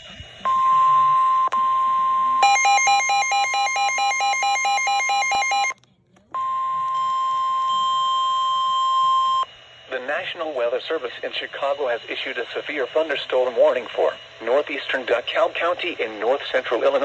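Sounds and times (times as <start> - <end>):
rapidly switching beeping tone: 0.5 - 5.8
steady high alert tone: 0.5 - 5.8.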